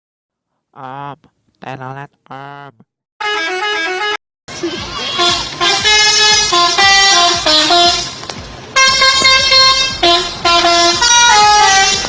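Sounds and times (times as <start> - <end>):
multi-tone musical air horn: 3.2 - 8.2, 8.8 - 12.0.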